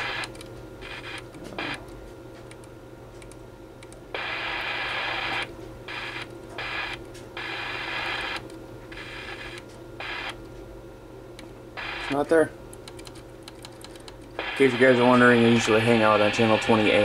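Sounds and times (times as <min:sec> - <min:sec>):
radio static hissing: 0:00.0 - 0:01.8, 0:04.2 - 0:10.4, 0:11.8 - 0:12.5, 0:14.4 - 0:17.0
low steady hum: 0:00.0 - 0:17.0.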